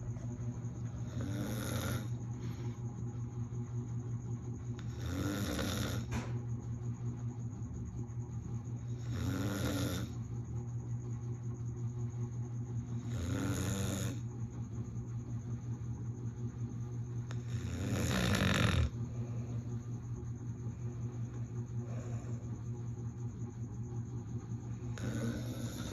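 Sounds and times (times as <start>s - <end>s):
person snoring: 1.0s - 2.2s, 4.8s - 6.1s, 9.0s - 10.2s, 13.0s - 14.2s, 17.3s - 19.2s, 25.0s - 25.9s.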